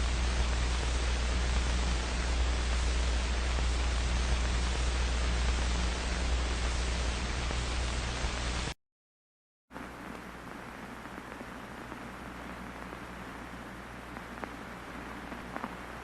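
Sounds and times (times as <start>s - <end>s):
low hum: 0.0s - 8.8s
static hiss: 0.0s - 8.8s, 9.7s - 16.0s.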